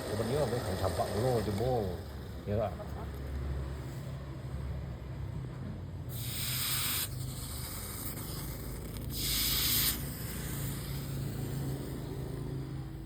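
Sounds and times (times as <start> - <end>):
steady low hum: 0.0 - 13.0
hot steel hissing in water: 6.1 - 12.5.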